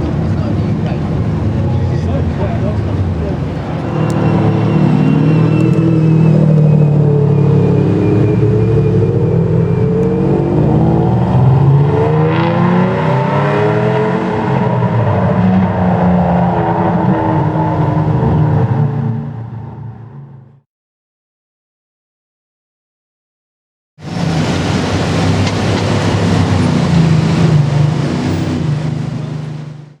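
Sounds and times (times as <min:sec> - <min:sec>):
car engine running: 0:00.0 - 0:11.8, 0:24.0 - 0:30.0.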